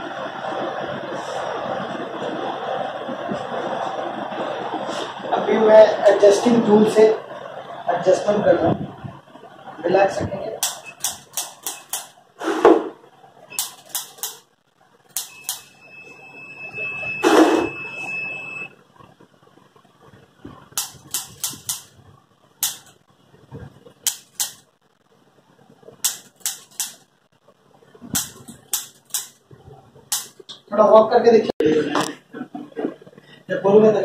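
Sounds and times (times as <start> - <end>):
sharp clicks of adjusting instrument: 10.6 - 12.1, 13.6 - 14.4, 15.1 - 15.7, 20.8 - 21.9, 22.6 - 22.9, 24.0 - 24.7, 26.0 - 27.0, 28.2 - 29.4, 30.1 - 30.6
steady high-pitched tone: 14.8 - 24.3.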